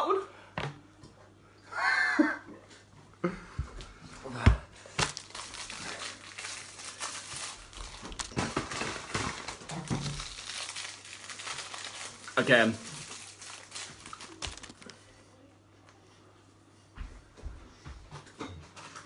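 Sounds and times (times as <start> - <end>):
crinkling and rustling: 4.8 - 15.1.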